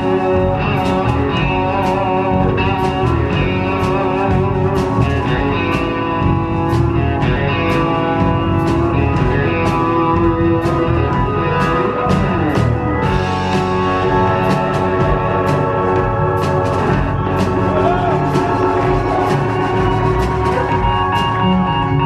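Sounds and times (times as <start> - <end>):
drums: 0.0 - 22.0
sustained guitar chords: 0.0 - 22.0.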